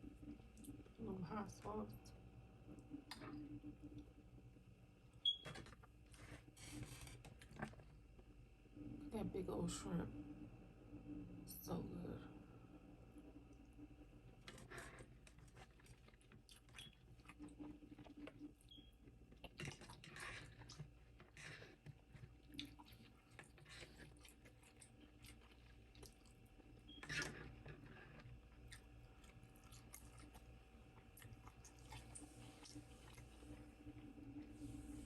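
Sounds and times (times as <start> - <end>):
chewing food: 14.5 - 34.0.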